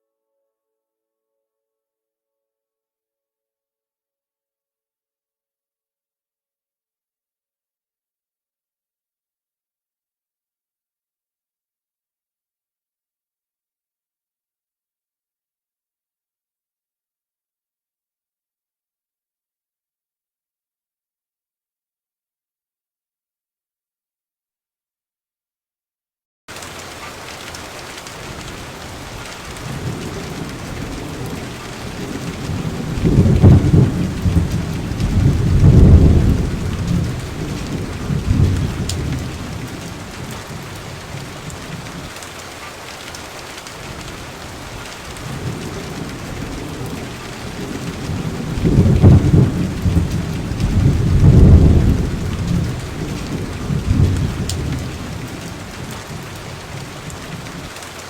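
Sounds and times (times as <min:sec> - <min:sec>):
steady rain: 0:26.5 - 0:58.0
thunder rumbling: 0:28.4 - 0:41.8, 0:43.9 - 0:57.6.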